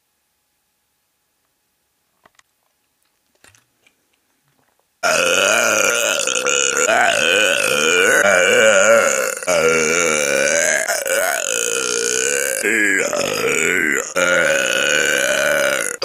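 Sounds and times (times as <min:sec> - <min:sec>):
long loud burp: 0:05.0 - 0:16.0.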